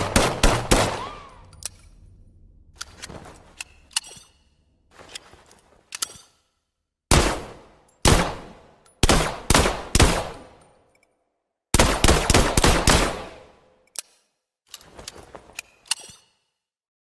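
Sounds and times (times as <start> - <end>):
pistol gunshots: 0.0 - 1.3, 7.1 - 10.4, 11.7 - 13.5.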